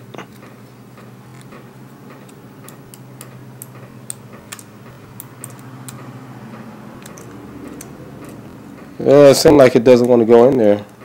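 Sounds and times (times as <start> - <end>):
steady low hum: 0.0 - 11.0
screwdriver and metal parts clicking: 1.3 - 6.2, 7.0 - 8.4.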